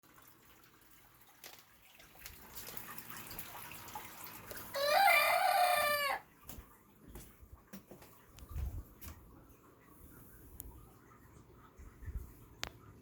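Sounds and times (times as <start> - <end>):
hen crowing: 4.7 - 6.3.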